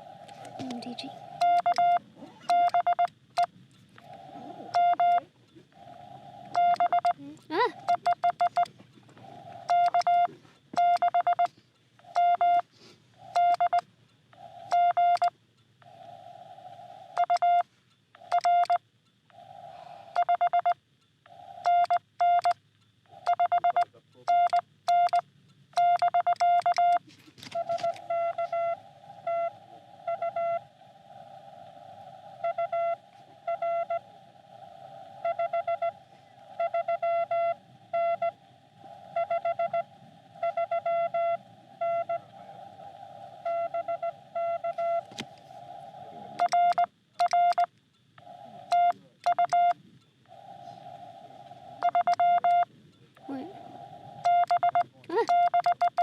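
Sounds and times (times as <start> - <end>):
radio band noise hiss: 0.0 - 15.2, 19.3 - 20.5, 23.0 - 24.5, 27.0 - 47.6, 48.2 - 56.0
morse code tone: 0.4 - 8.7, 9.6 - 13.8, 14.4 - 15.3, 17.2 - 18.8, 20.1 - 22.6, 23.2 - 25.2, 25.8 - 30.7, 32.4 - 34.1, 35.2 - 45.2, 46.3 - 49.8, 51.8 - 53.6, 54.2 - 56.0
faint morse code reply: 0.5 - 3.1, 4.3 - 5.6, 54.2 - 56.0.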